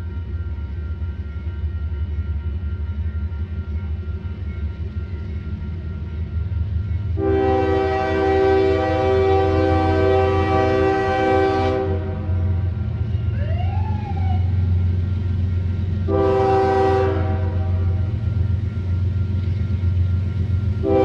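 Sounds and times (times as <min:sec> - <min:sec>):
locomotive air horn chord: 0:07.2 - 0:12.8, 0:16.1 - 0:18.2, 0:20.8 - 0:21.0.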